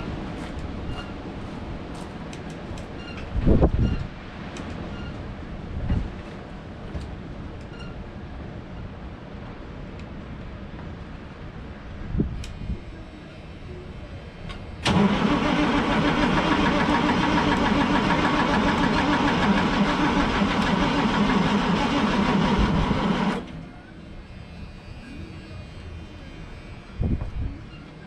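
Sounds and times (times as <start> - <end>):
diesel engine starter cranking: 14.8 - 23.6.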